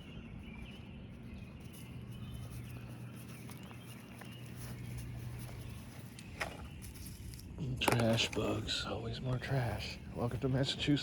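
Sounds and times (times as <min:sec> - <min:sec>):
faint birds chirping: 0:00.0 - 0:11.0
low outdoor rumble: 0:01.0 - 0:11.0
light footstep ticks: 0:01.7 - 0:08.4.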